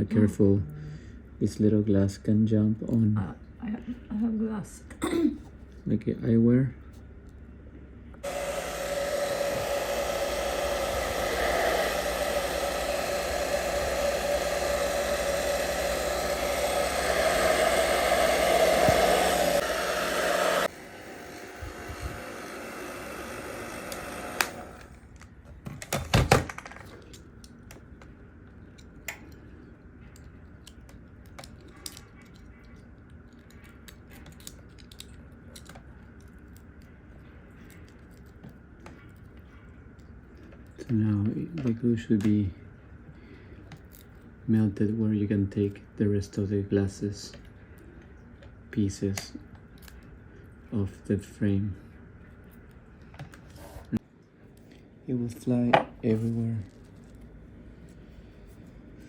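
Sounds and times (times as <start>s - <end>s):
faint hum: 0.0s - 25.6s
hot-air blower running: 8.2s - 25.2s.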